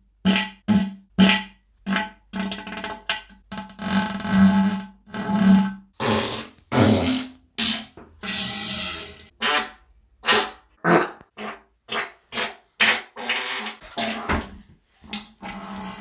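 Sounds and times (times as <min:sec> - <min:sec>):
human farts: 0:05.4 - 0:14.5.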